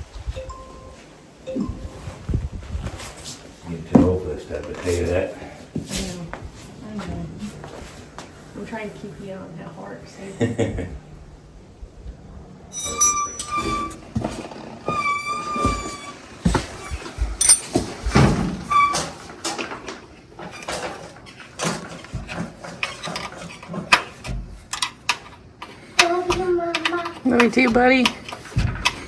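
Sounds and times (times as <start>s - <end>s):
high steady squeaks: 12.7s - 17.7s
metal tool clicks and knocks: 17.4s - 17.8s.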